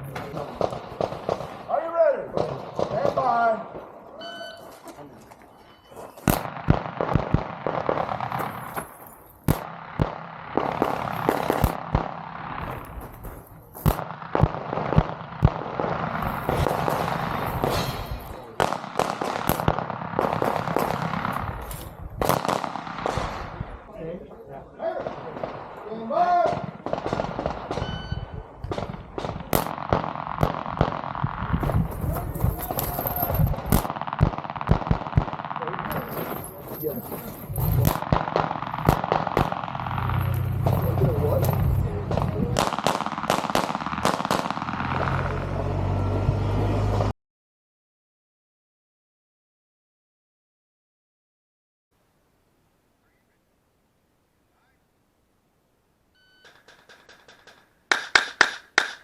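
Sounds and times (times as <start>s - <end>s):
pistol shots: 0.0s - 4.1s, 6.1s - 23.8s, 24.9s - 45.4s, 56.5s - 59.0s
handgun shots: 56.5s - 59.0s.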